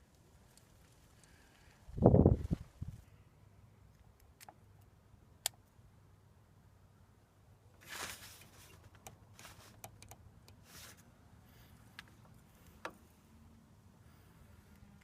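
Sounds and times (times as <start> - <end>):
faint rustle: 7.8 - 9.8, 10.6 - 15.0.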